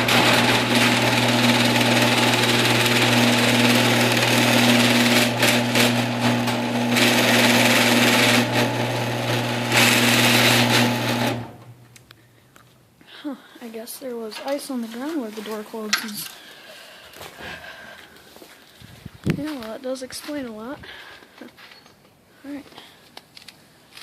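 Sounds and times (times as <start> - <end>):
screw drive whirring: 0.0 - 11.9
garage door motor hum: 0.0 - 12.1.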